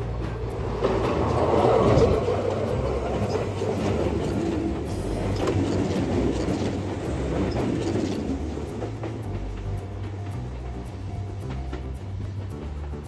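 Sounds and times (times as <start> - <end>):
train wheels rumbling on rails: 0.0 - 13.0
wheel clicks: 0.5 - 9.7.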